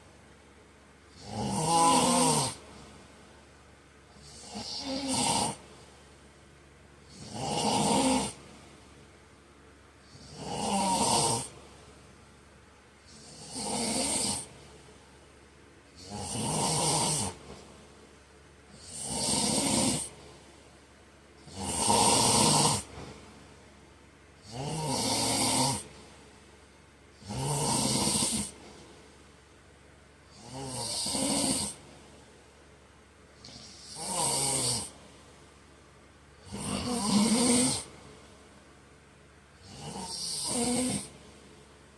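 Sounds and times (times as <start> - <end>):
quiet breaths: 0.0 - 41.9
man snoring: 1.1 - 2.6, 4.1 - 5.7, 7.1 - 8.4, 10.0 - 11.6, 13.0 - 14.6, 16.0 - 17.6, 18.7 - 20.2, 21.4 - 23.0, 24.4 - 26.0, 27.2 - 28.6, 30.3 - 31.9, 33.4 - 35.0, 36.4 - 37.9, 39.6 - 41.2.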